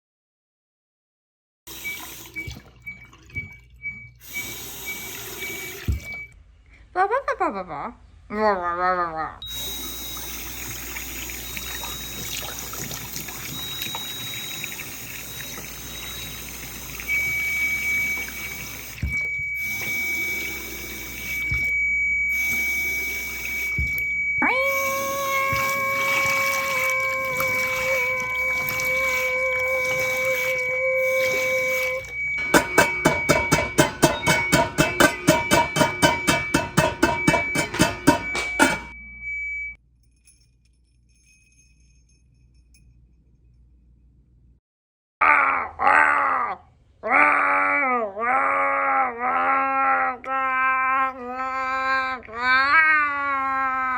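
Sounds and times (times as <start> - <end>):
trickling water-like hiss: 4.2 - 6.1, 9.5 - 21.7, 22.3 - 24.0, 24.8 - 32.2
high-pitched tone: 9.5 - 39.2.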